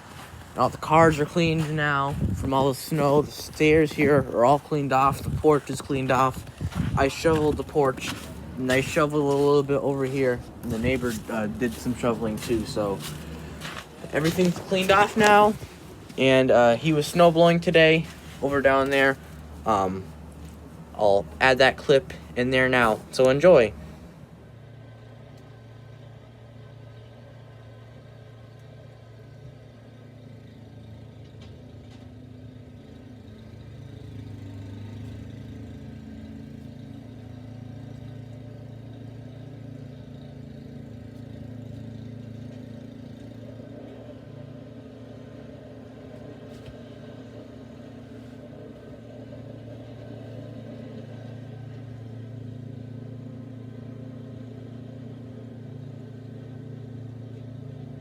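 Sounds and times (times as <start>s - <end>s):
snow blower engine running: 0.0s - 27.0s.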